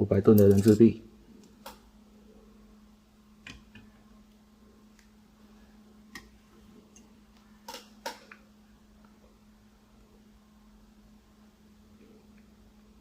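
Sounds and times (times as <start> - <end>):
faint low hum: 0.0 - 13.0
small model parts clicking: 0.3 - 0.8.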